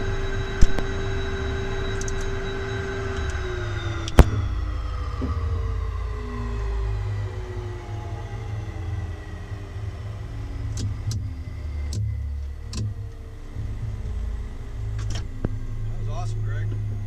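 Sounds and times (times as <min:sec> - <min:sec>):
faint tones sliding downward: 0:00.0 - 0:17.0
vehicle rumble: 0:00.0 - 0:17.0
sharp clicks: 0:00.6 - 0:00.9.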